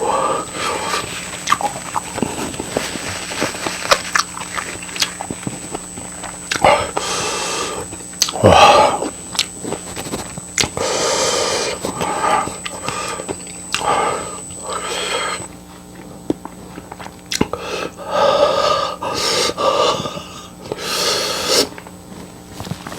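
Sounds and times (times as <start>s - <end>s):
man breathing hard and sniffing: 0.0s - 4.0s, 6.6s - 15.5s, 17.5s - 21.8s.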